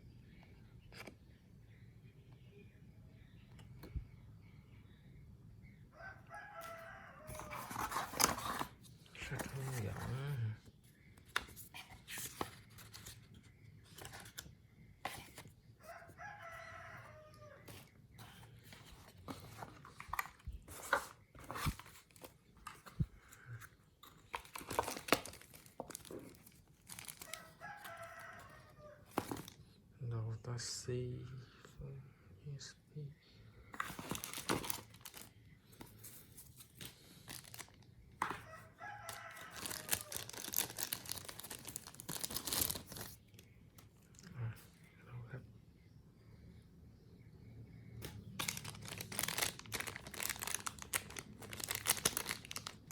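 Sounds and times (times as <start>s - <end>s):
rooster crowing: 5.9s - 7.9s, 15.8s - 17.8s, 27.2s - 29.2s, 38.2s - 40.4s
packaging clicks and rustling: 6.6s - 10.3s, 17.7s - 29.6s, 33.8s - 43.4s, 48.0s - 52.9s.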